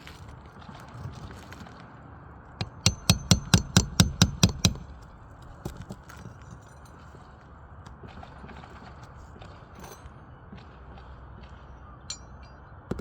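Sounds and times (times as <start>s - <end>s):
hammer striking nail: 2.6s - 5.0s.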